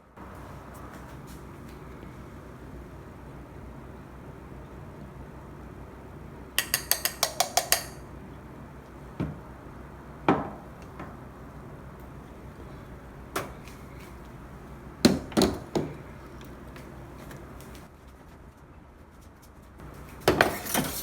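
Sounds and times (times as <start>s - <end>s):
light metallic taps: 6.6s - 8.0s.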